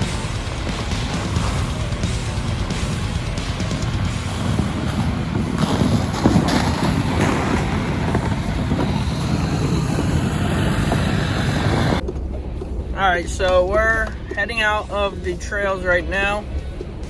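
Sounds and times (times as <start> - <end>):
wind on microphone: 0.0 - 13.0
vehicle engine and tyre rumble: 0.0 - 17.0.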